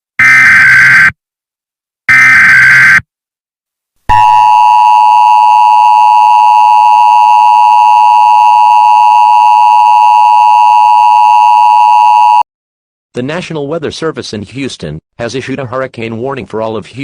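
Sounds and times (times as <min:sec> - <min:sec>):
loud two-tone alarm: 0:00.2 - 0:01.2, 0:02.1 - 0:03.0, 0:04.1 - 0:12.4.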